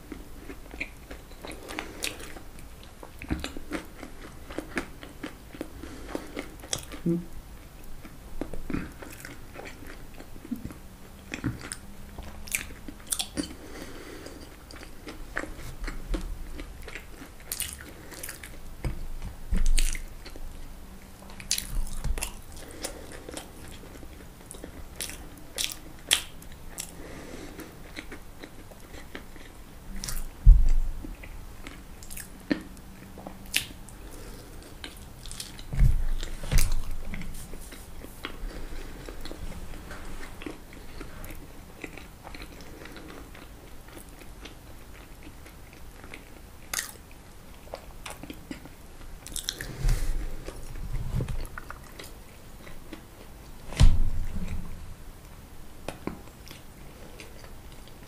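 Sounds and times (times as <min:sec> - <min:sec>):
low thumps: 0:30.4 - 0:31.0, 0:53.7 - 0:55.2.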